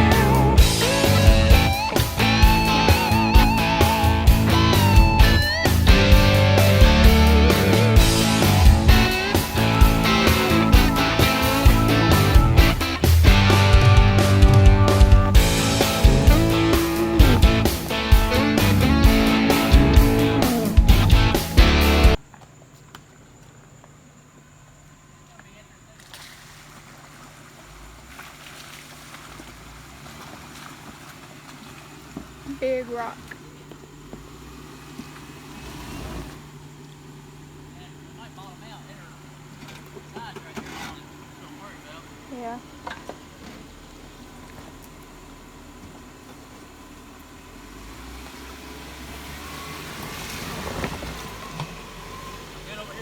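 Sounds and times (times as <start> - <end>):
engine running at low revs: 0.0 - 22.2, 29.0 - 53.0
low rumble: 0.0 - 22.2
outdoor hiss: 0.7 - 53.0.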